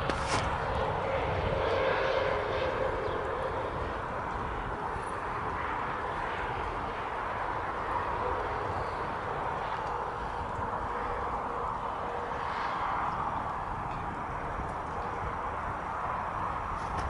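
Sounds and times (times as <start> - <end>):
steady whine: 0.0 - 17.0.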